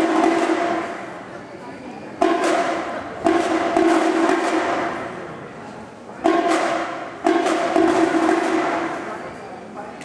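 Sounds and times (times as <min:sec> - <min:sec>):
marching band chords: 0:00.0 - 0:01.3, 0:02.2 - 0:05.4, 0:06.2 - 0:09.2
percussion hit: 0:00.0 - 0:01.3, 0:02.2 - 0:05.4, 0:06.2 - 0:09.3.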